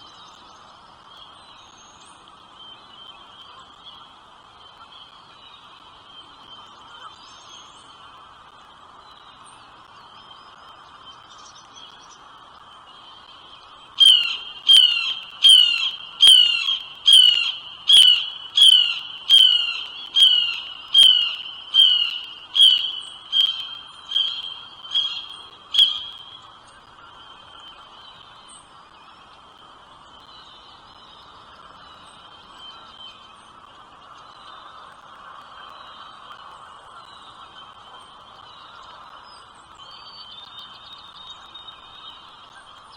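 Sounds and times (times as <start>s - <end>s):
faint steady high hum: 0.0s - 42.9s
bird giving sharp calls: 14.0s - 26.4s.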